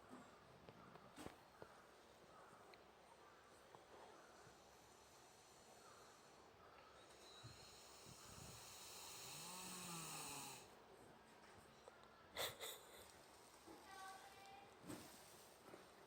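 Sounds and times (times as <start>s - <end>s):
horse snoring: 7.5s - 10.7s.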